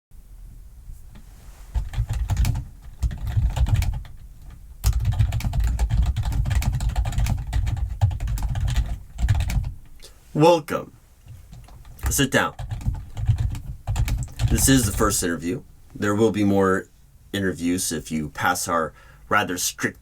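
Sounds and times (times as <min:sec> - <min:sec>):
fast typing on keyboard: 0:01.7 - 0:09.8, 0:11.5 - 0:15.3.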